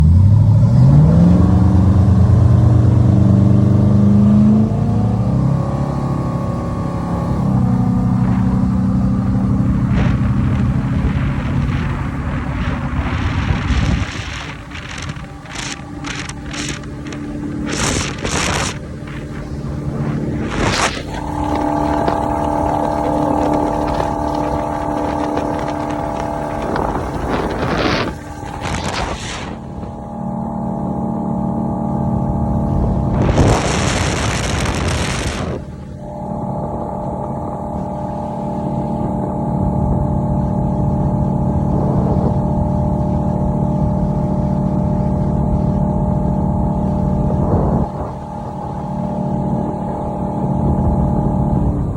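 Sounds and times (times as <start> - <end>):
motorboat engine running: 0.0 - 51.9
water rushing and splashing: 5.8 - 31.1, 32.6 - 39.4.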